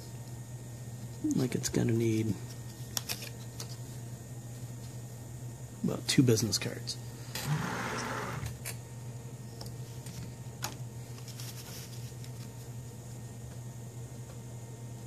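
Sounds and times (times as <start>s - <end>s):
steady low hum: 0.0s - 15.0s
paper rustle: 11.1s - 12.7s.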